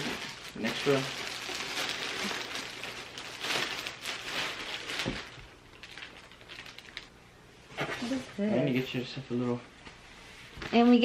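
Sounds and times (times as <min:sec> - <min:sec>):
plastic packaging rustling: 0:00.0 - 0:07.2.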